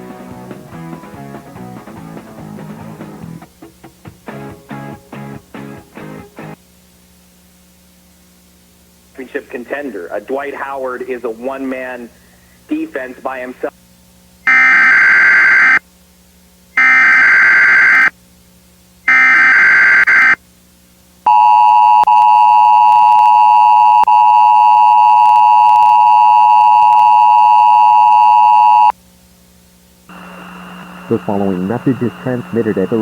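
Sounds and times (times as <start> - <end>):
data tone bursts: 14.5 - 15.8, 16.8 - 18.1, 19.1 - 20.4, 21.3 - 28.9, 30.1 - 33.0.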